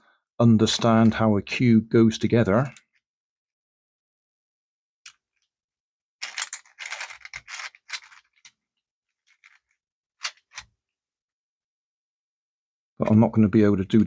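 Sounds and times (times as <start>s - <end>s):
plastic puzzle cube clicking: 6.2s - 8.6s.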